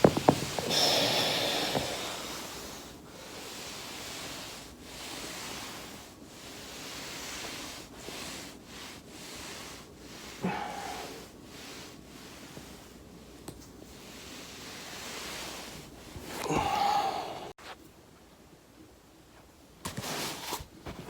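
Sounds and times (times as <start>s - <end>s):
swishing rub on foam roller: 0.0s - 16.5s.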